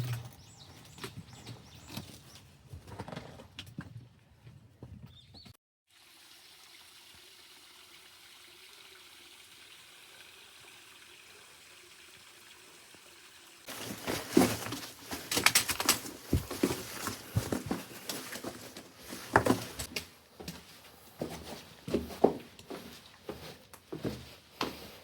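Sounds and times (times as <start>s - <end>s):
rustling: 13.7s - 19.9s.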